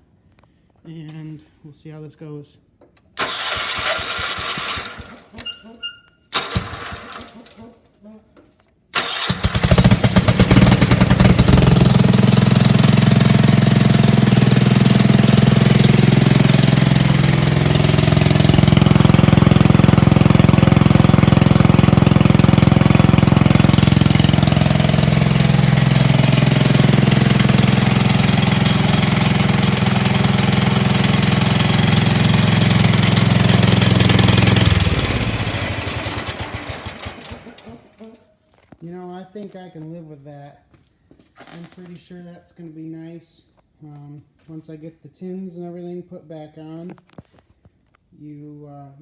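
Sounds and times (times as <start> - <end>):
garden tractor engine running: 3.2 - 5.4, 6.4 - 7.5, 9.0 - 38.0.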